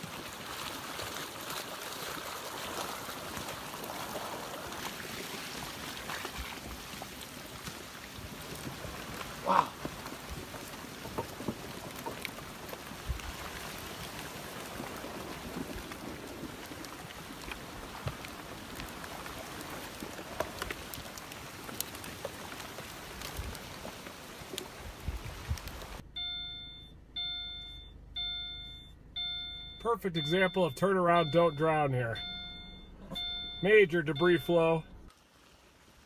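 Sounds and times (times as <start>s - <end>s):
rushing flood water: 0.0s - 26.0s
repeating electronic beep: 26.2s - 35.1s.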